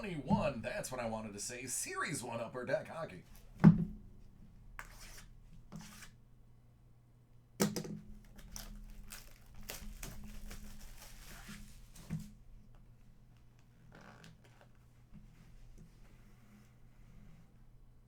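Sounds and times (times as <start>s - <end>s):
plastic wrapping ripping: 8.2s - 12.0s
plastic wrapping crinkling: 8.2s - 12.1s.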